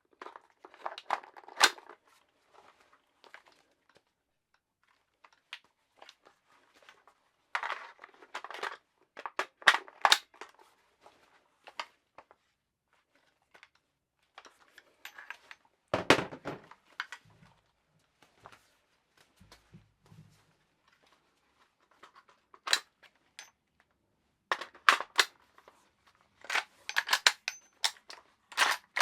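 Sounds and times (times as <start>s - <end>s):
metallic clicks and rattles: 26.5s - 29.0s.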